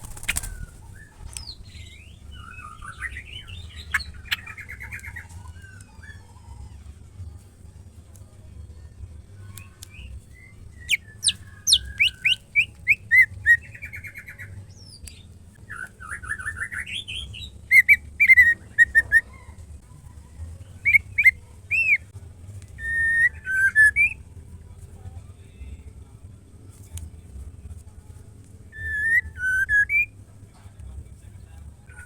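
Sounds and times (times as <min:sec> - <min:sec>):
steady low hum: 0:00.0 - 0:32.0
bird whistled calls: 0:10.4 - 0:14.5, 0:22.8 - 0:24.2, 0:28.7 - 0:30.1.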